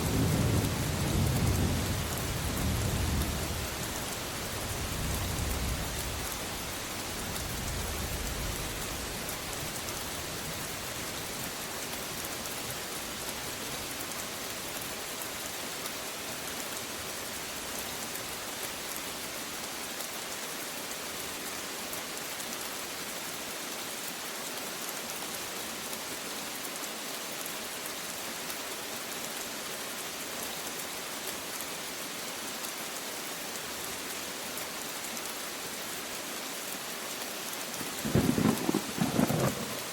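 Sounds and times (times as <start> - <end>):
steady rain falling: 0.0 - 39.9
low thunder rumble: 37.9 - 39.9.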